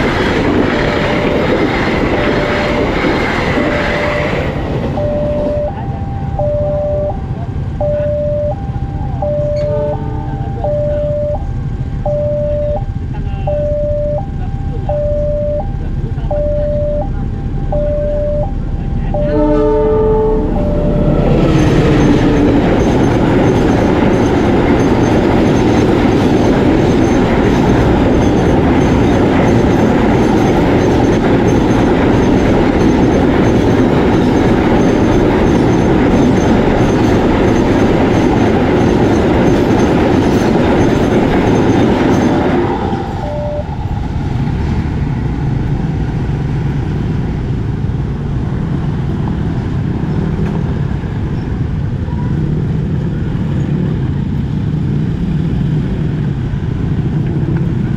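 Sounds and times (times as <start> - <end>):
train wheels on rails: 0.0 - 57.9
train horn blast: 9.4 - 11.1, 18.9 - 22.6.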